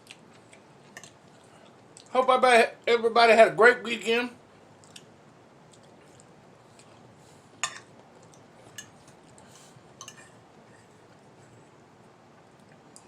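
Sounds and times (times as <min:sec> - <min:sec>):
cutlery clinking on a plate: 0:07.6 - 0:07.9, 0:10.0 - 0:10.4.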